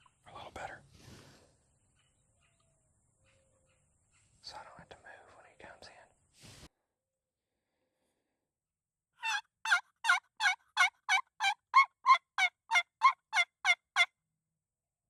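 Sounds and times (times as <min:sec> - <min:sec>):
turkey call yelps: 0:09.2 - 0:14.1.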